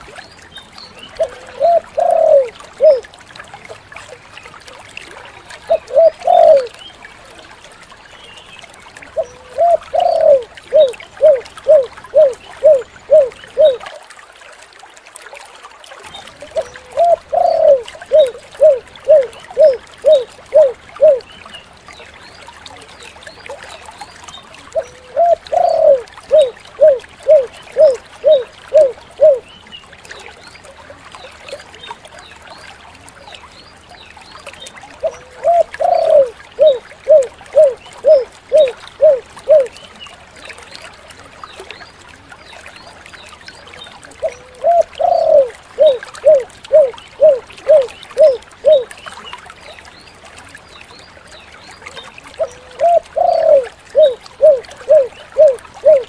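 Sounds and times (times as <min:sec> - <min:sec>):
dove cooing: 0:01.2 - 0:03.0, 0:05.7 - 0:06.7, 0:09.2 - 0:13.8, 0:16.5 - 0:21.2, 0:24.8 - 0:29.4, 0:35.0 - 0:39.7, 0:44.2 - 0:48.9, 0:52.4 - 0:56.0.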